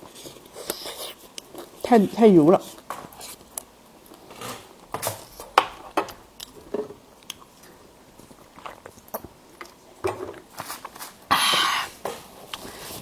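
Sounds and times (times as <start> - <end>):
person chewing food: 7.2 - 13.0.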